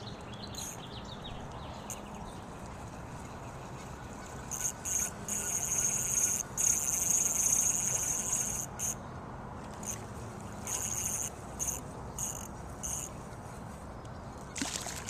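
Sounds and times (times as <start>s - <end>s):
faint outdoor background: 0.0s - 15.0s
high-pitched insect trilling: 0.5s - 0.8s, 4.5s - 9.0s, 10.6s - 13.1s.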